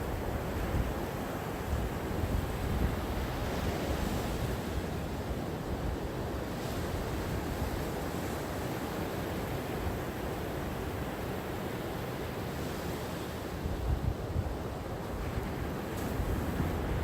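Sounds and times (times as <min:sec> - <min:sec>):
ocean waves on shore: 0:00.0 - 0:17.0.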